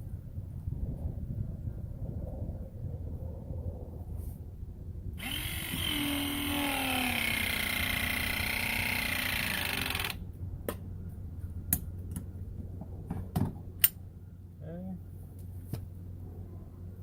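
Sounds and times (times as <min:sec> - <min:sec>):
press tool motor whining: 0:05.2 - 0:10.2.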